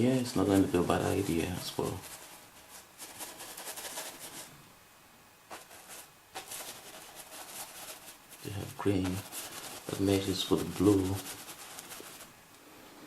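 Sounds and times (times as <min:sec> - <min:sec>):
paintbrush scrubbing: 0:00.2 - 0:04.6, 0:05.5 - 0:12.3.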